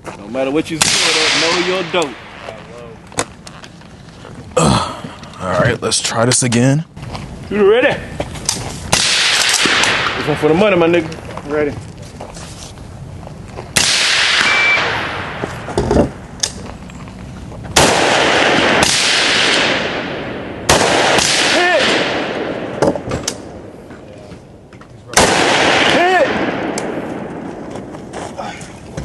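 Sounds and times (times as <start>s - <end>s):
rifle shots echoing: 0.8s - 2.4s, 8.9s - 10.8s, 13.8s - 15.7s, 17.8s - 23.8s, 25.1s - 27.7s.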